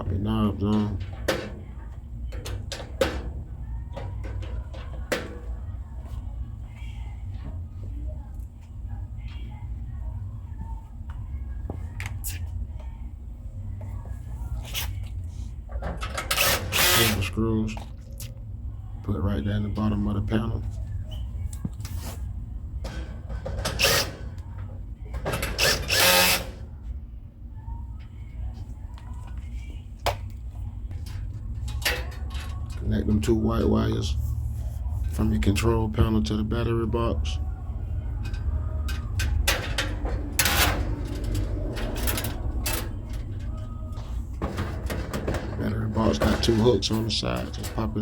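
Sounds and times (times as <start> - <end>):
cordless drill driving screws: 25.6 - 26.5
steady low rumble: 26.6 - 48.0.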